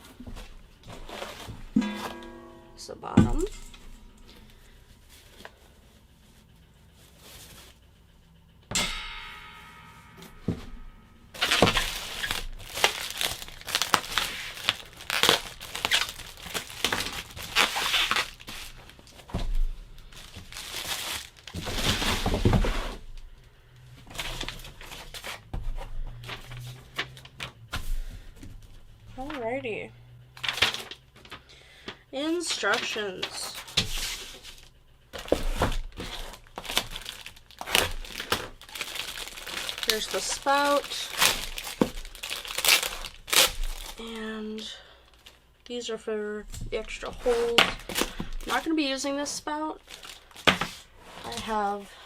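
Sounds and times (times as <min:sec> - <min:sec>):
packaging crinkling and tearing: 0:11.4 - 0:19.3, 0:20.0 - 0:22.5, 0:30.4 - 0:31.4, 0:32.4 - 0:44.2, 0:46.8 - 0:48.8, 0:49.7 - 0:51.8.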